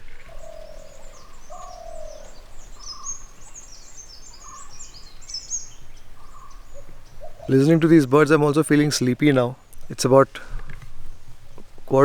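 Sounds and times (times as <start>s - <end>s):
lower bird call: 0.0s - 8.4s
high bird chirps: 0.2s - 8.3s.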